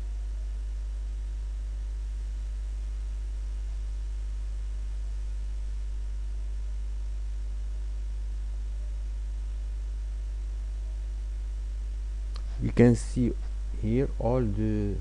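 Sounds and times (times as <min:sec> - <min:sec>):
electrical hum with hiss: 0:00.0 - 0:15.0.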